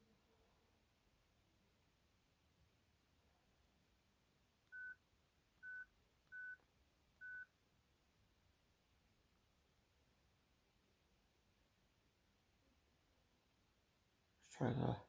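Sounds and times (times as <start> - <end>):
phone keypad beeps: 4.7 - 5.0, 5.6 - 6.6, 7.2 - 7.5.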